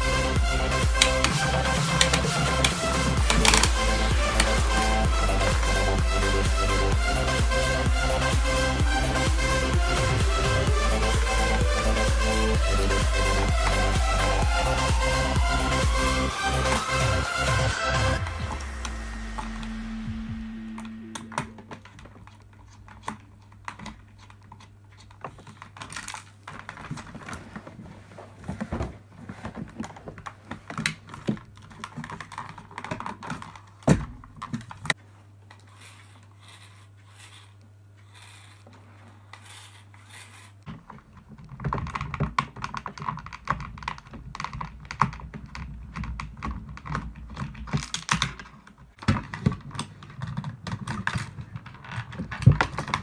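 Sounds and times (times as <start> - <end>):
plastic parts clicking and clattering: 0.8 - 5.0, 21.1 - 53.0.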